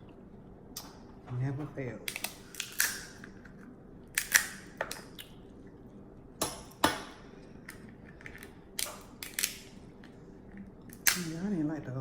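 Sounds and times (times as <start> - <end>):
crab shells cracking: 2.1 - 5.4, 7.7 - 11.4.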